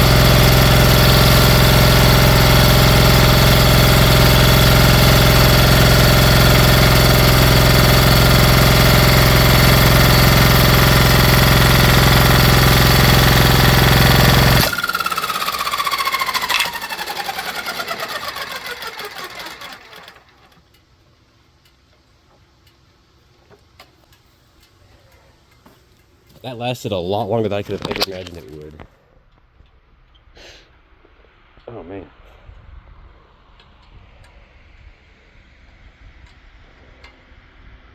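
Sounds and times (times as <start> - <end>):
engine running at high speed: 0.0 - 20.6
falling whine: 0.0 - 20.6, 29.7 - 37.9.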